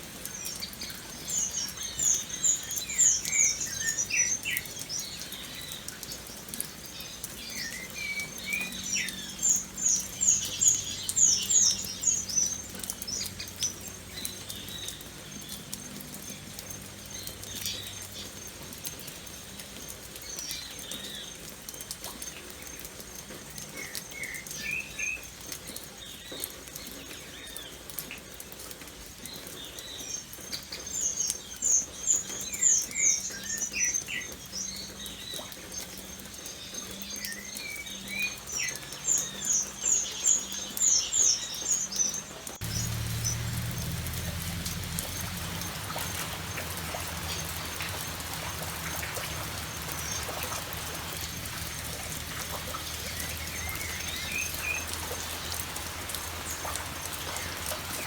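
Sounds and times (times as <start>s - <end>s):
light rain pattering: 0.0s - 58.0s
birds chirping: 0.2s - 21.4s, 30.6s - 58.0s.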